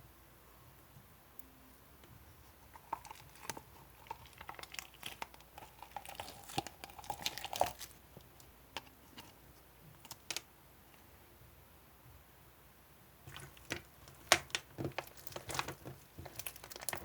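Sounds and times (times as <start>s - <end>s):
crinkling handling noises: 2.0s - 11.0s, 13.2s - 17.0s.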